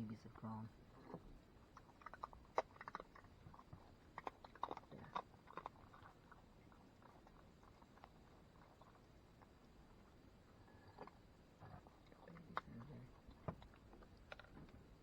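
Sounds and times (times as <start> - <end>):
animal chewing crunchy food: 0.7 - 15.0.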